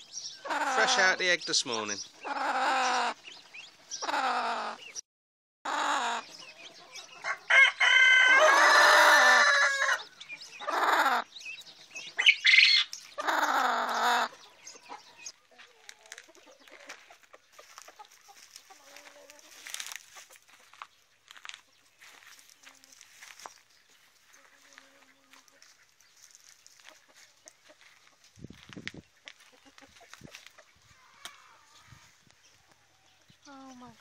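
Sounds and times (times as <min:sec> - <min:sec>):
chickens clucking: 0:00.0 - 0:05.0, 0:05.7 - 0:34.0
rooster crowing: 0:07.2 - 0:10.1.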